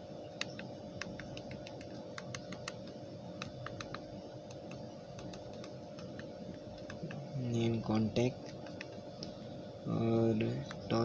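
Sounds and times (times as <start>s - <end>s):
faint steady hum: 0.0s - 11.0s
phone keypad button clicks: 0.4s - 7.0s.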